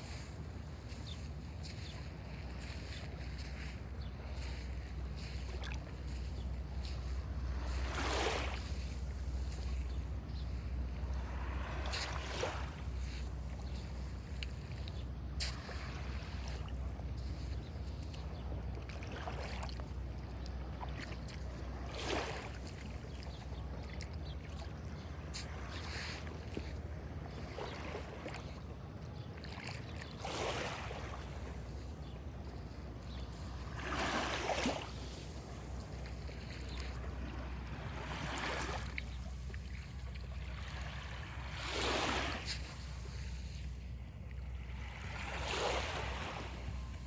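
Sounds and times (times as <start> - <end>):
small waves washing onto shore: 0.0 - 47.0
water lapping: 0.0 - 47.0
water swish: 29.4 - 47.0.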